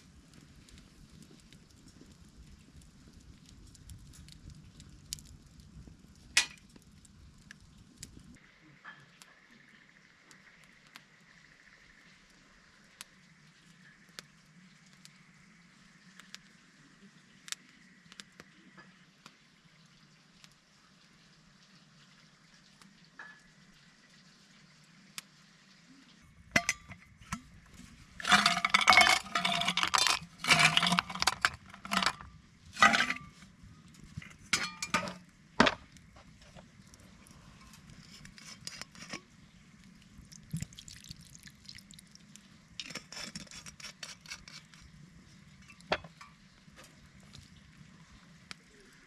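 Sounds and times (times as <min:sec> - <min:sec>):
metal cookware clinking and scraping: 0:26.6 - 0:27.5, 0:28.2 - 0:33.4, 0:34.2 - 0:35.8, 0:45.7 - 0:46.4.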